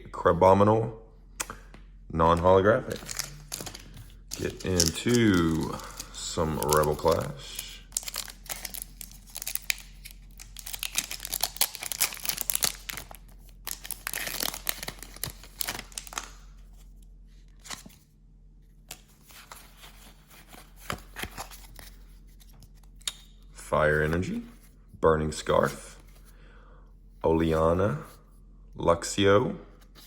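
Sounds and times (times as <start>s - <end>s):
foil wrapper tearing and crinkling: 2.9s - 16.4s.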